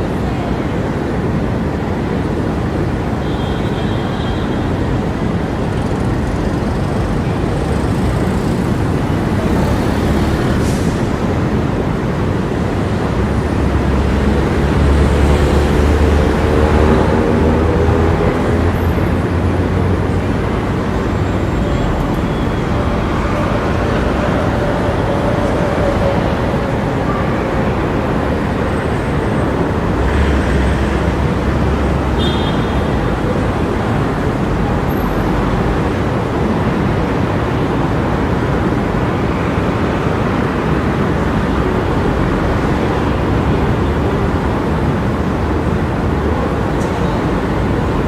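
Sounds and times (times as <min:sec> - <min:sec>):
city street traffic: 0:00.0 - 0:48.0
heavy vehicle engine rumble: 0:04.0 - 0:48.0
engine revving pulling away: 0:08.8 - 0:11.7.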